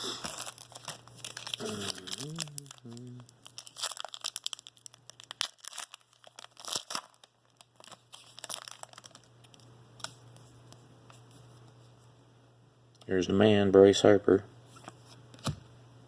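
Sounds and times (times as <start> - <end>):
foil wrapper crinkling and tearing: 0.1 - 10.2
cards being handled: 14.7 - 15.6.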